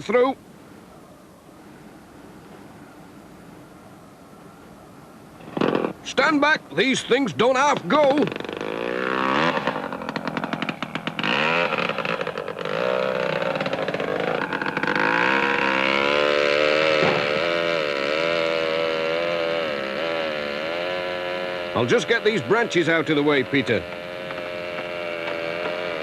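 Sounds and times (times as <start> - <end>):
chainsaw cutting a tree: 5.4 - 6.0, 7.8 - 26.0.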